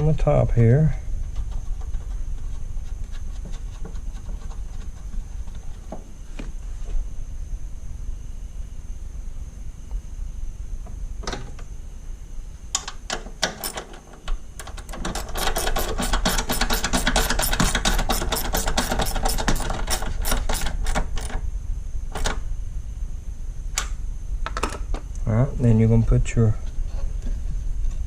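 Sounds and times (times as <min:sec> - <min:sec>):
socket ratchet clicking: 0:14.6 - 0:21.3.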